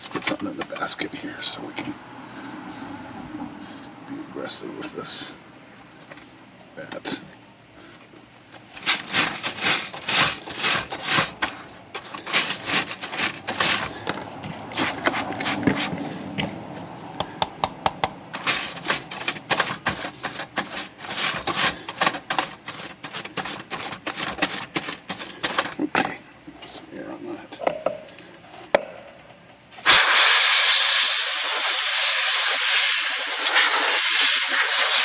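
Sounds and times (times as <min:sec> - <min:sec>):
bristle brush scrubbing plastic keys: 0:08.8 - 0:16.0, 0:18.4 - 0:25.8.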